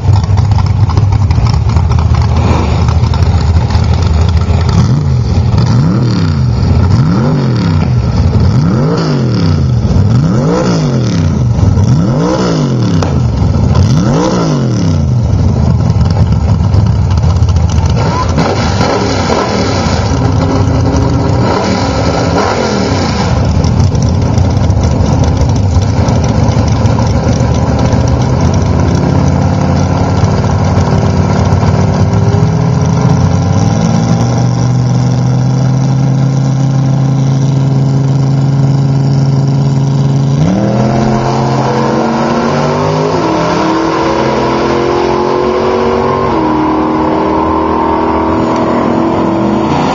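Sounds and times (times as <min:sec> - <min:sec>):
pickup engine revving and idling: 0:00.0 - 0:49.9.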